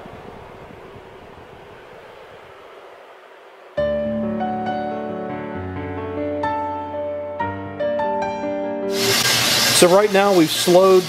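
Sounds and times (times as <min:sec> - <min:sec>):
coffee roaster rumbling hiss: 0:08.9 - 0:11.0.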